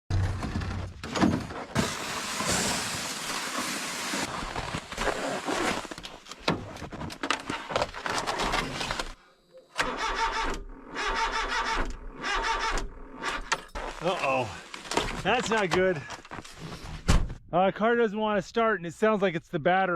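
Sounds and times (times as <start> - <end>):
starter cranking engine: 9.8 - 13.5.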